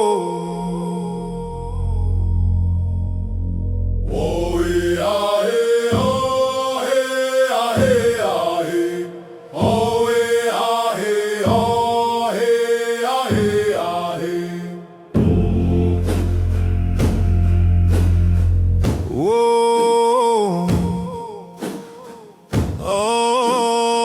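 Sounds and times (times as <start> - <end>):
wordless chanted vocal melody: 0.0 - 24.0
low drone: 0.3 - 5.2, 14.9 - 18.8.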